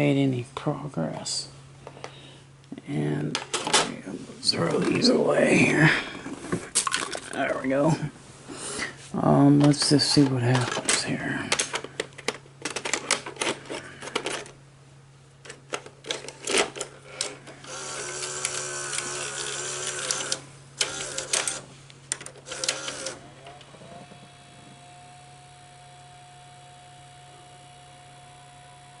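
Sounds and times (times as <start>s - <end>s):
video recorder mechanism clicks: 15.5s - 23.7s
motor whirring: 17.1s - 21.7s, 22.4s - 29.0s.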